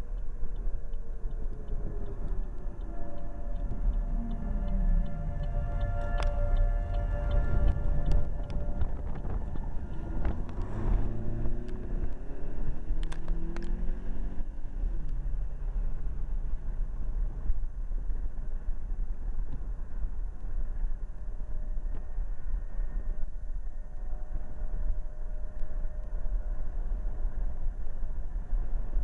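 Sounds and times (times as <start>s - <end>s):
wind rumble on microphone: 0.0s - 29.0s
warning siren winding down: 1.6s - 14.4s.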